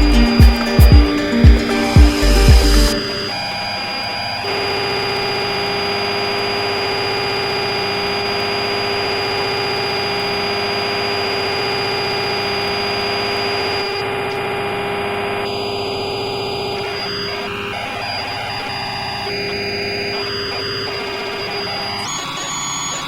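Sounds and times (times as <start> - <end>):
noisy hiss: 0.0 - 6.3
machine buzzing hum: 0.0 - 23.0.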